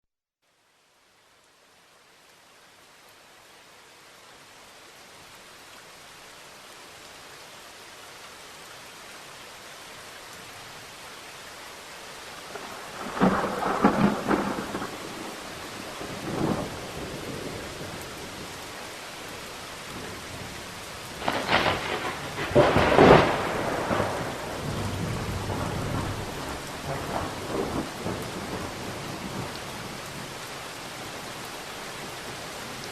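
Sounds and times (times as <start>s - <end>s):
steady rain: 0.4s - 32.9s
low thunder rumbling: 12.5s - 18.0s, 21.1s - 29.5s
thunder cracks: 12.7s - 15.3s, 21.2s - 28.7s.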